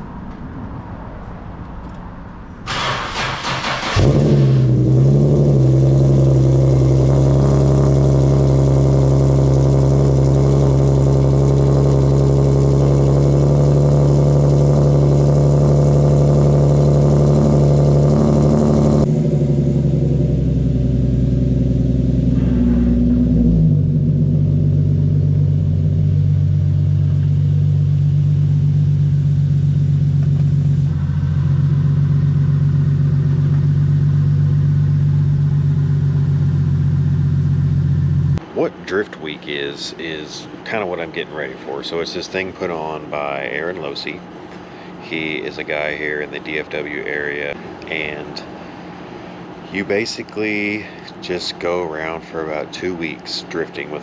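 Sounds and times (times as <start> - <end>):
car engine idling: 2.5 - 54.0
engine starter cranking: 2.7 - 4.7.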